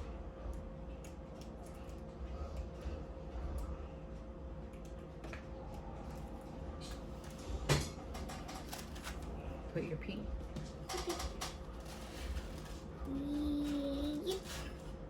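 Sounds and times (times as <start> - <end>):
faint hum: 0.0 - 15.0
utensils and dishes clicking: 7.7 - 9.2, 10.8 - 12.7.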